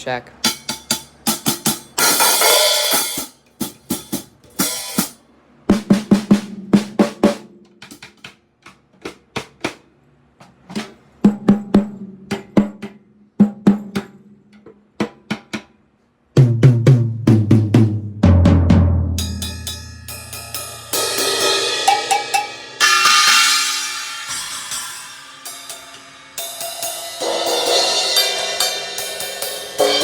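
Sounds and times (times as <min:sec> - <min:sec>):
drum strokes and fills: 0:00.4 - 0:15.8, 0:16.4 - 0:30.0
drums ringing low: 0:05.7 - 0:07.6, 0:11.2 - 0:14.2, 0:16.4 - 0:30.0
cymbal crash: 0:19.2 - 0:30.0.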